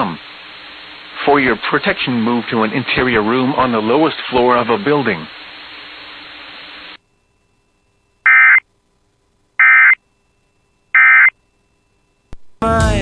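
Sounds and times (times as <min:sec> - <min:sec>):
radio hiss: 0:00.0 - 0:07.0
screechy digital data tones: 0:08.2 - 0:08.6, 0:09.6 - 0:10.0, 0:10.9 - 0:11.4.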